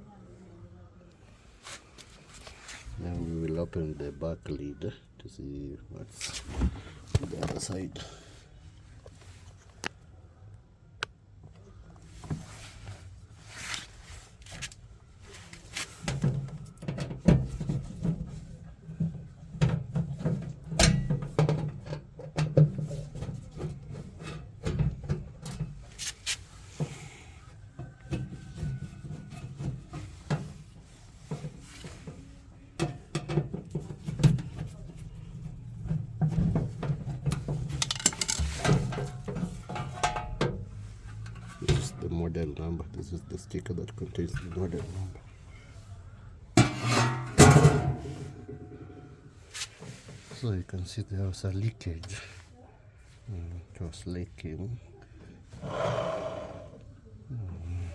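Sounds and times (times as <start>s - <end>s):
hands working washing machine lid: 46.6s - 49.0s.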